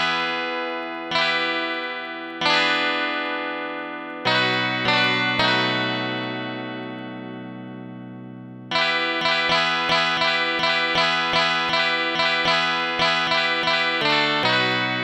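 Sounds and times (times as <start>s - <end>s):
plucked string chords: 0.0s - 15.0s.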